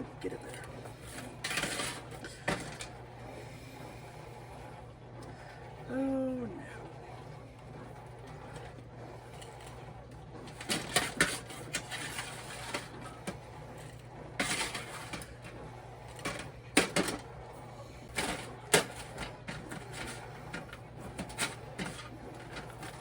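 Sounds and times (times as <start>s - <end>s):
low steady hum: 0.0s - 23.0s
utensils clattering on plates: 1.0s - 2.9s, 10.5s - 13.4s, 14.4s - 15.4s, 16.2s - 17.2s, 18.1s - 23.0s.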